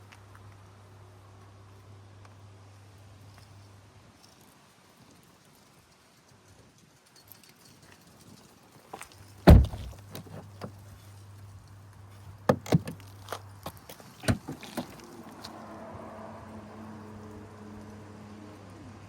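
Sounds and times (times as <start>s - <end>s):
car door shutting: 9.4s - 10.8s, 12.5s - 13.0s, 14.2s - 15.0s.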